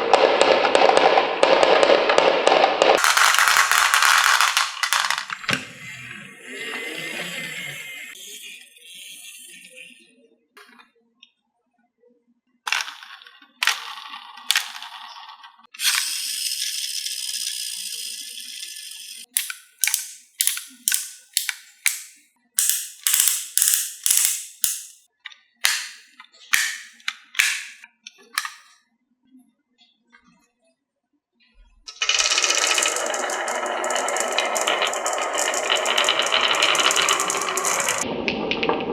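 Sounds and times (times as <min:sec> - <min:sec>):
marbles rolling on wooden track: 0:02.9 - 0:06.2, 0:12.7 - 0:15.0, 0:19.4 - 0:25.0, 0:25.6 - 0:27.8, 0:31.9 - 0:38.1
marble knocks: 0:03.0 - 0:05.5
sharp marble clacks: 0:03.0 - 0:05.6, 0:19.4 - 0:25.0, 0:25.6 - 0:27.8, 0:28.4 - 0:28.7, 0:32.3 - 0:38.0.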